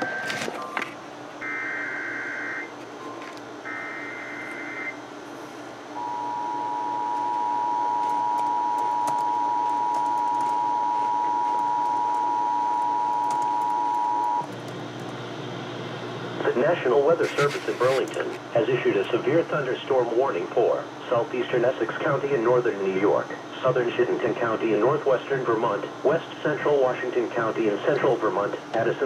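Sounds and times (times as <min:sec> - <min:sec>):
two-tone attention signal: 0:06.0 - 0:14.4.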